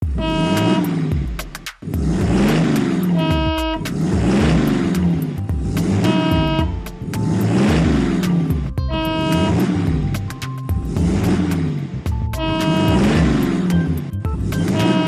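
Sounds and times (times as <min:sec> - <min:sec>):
background music with beat: 0:00.0 - 0:15.0
horn-like toot: 0:00.1 - 0:01.0, 0:03.1 - 0:03.9, 0:05.9 - 0:06.7, 0:08.9 - 0:09.7, 0:12.4 - 0:13.4, 0:14.6 - 0:15.0.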